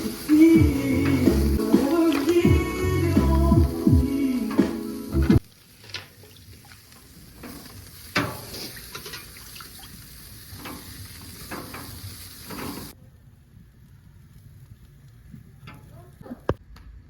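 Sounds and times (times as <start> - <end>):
oysters sizzling on a grill: 0.0 - 13.0.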